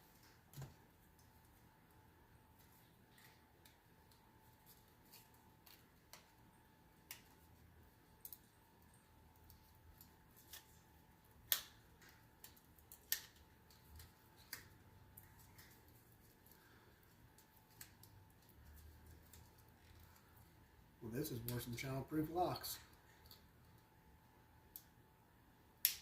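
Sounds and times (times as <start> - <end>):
plastic package clicks and snaps: 11.4 - 15.9, 25.8 - 26.0.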